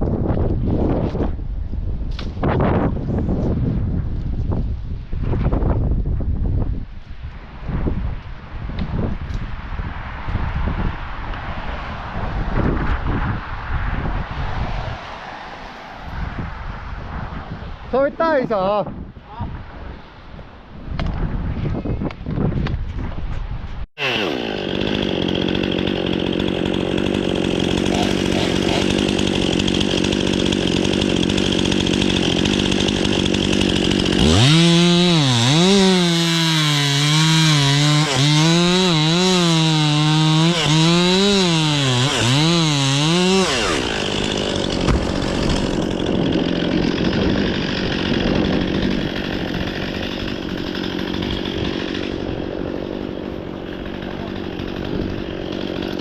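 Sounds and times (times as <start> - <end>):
chainsaw cutting wood: 24.0 - 56.0.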